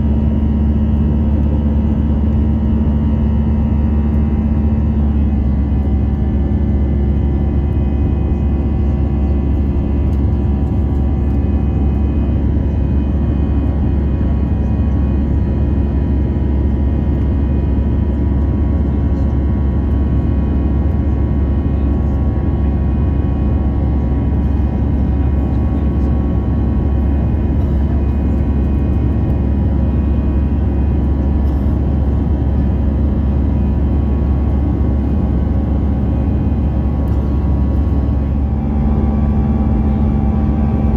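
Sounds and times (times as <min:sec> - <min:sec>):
aircraft cabin drone: 0:00.0 - 0:40.9
humming tones: 0:33.2 - 0:40.9.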